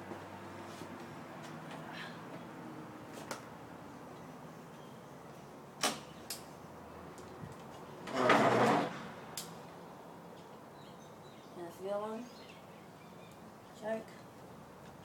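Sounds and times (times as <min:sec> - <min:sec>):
rustling scrape: 0:08.1 - 0:09.0.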